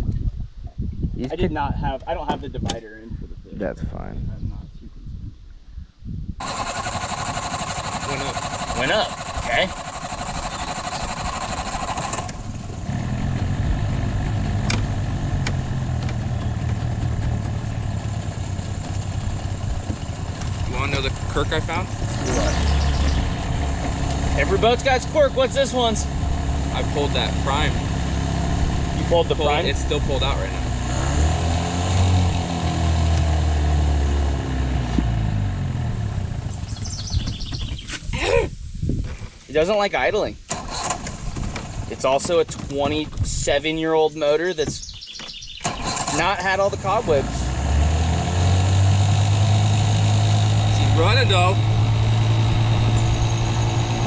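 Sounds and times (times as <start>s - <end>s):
steady whine: 6.4s - 31.0s
outboard motor idling: 6.4s - 37.8s, 40.5s - 43.5s, 44.6s - 54.0s.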